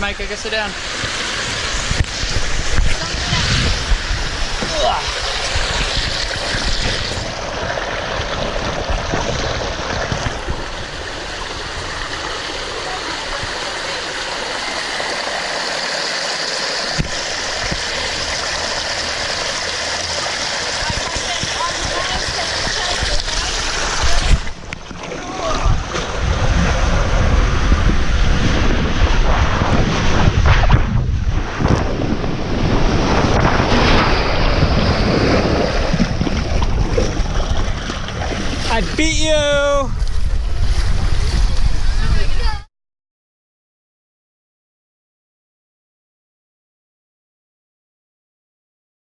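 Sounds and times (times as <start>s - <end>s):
wind buffeting microphone: 0.0s - 13.6s, 20.8s - 42.7s
water rushing down a slide: 0.0s - 42.7s.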